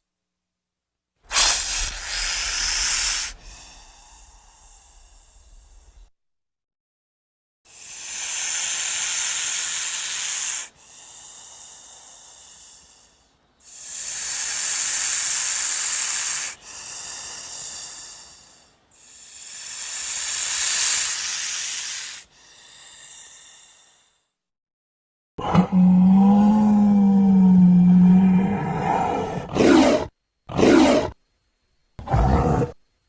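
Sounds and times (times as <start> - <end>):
giant snake hissing: 1.3 - 6.1, 7.7 - 24.1.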